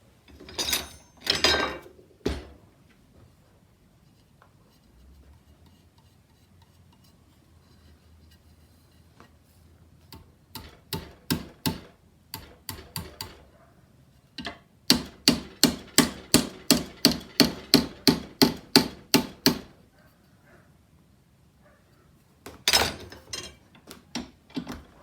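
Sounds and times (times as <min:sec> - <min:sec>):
hammer on sheet metal: 0:10.5 - 0:13.4, 0:14.9 - 0:19.7.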